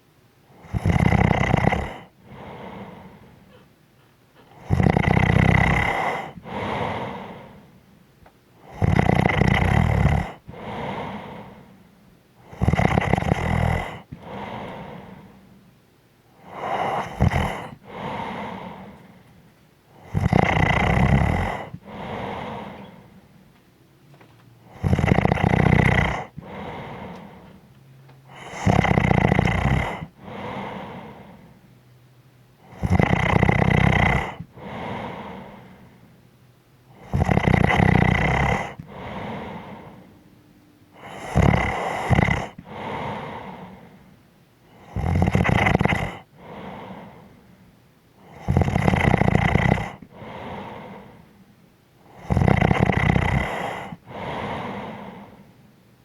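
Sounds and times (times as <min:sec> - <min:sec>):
person snoring: 0:00.6 - 0:03.7, 0:04.4 - 0:07.8, 0:08.6 - 0:11.8, 0:12.4 - 0:15.4, 0:16.4 - 0:19.3, 0:19.9 - 0:23.1, 0:24.6 - 0:27.6, 0:28.3 - 0:31.6, 0:32.6 - 0:36.0, 0:36.9 - 0:40.1, 0:41.0 - 0:44.1, 0:44.7 - 0:47.4, 0:48.2 - 0:51.3, 0:52.0 - 0:55.5.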